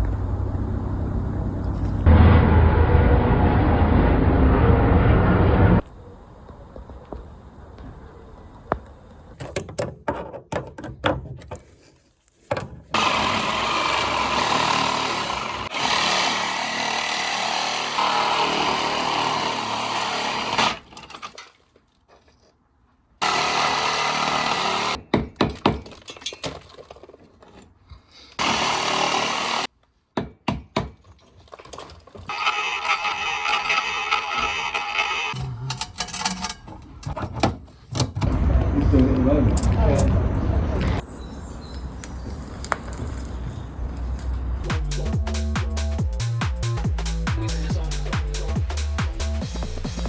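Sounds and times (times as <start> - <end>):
power tool running: 13.0 - 20.8, 23.2 - 25.0, 28.4 - 29.7.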